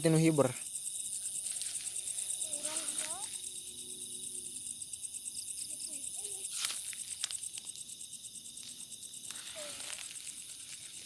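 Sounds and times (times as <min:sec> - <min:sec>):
crickets trilling: 0:00.0 - 0:11.0.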